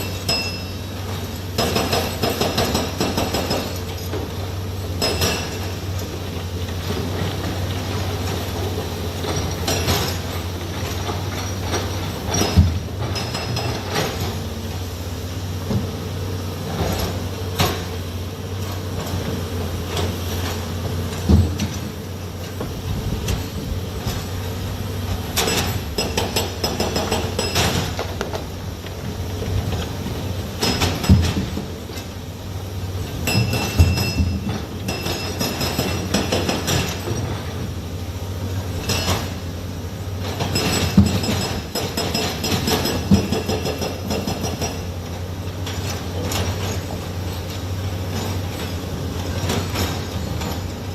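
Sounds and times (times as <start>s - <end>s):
heavy machinery engine hum: 0.0s - 50.9s
metallic clanks and knocks: 25.3s - 28.5s, 30.6s - 32.2s, 33.2s - 37.6s, 40.2s - 45.0s.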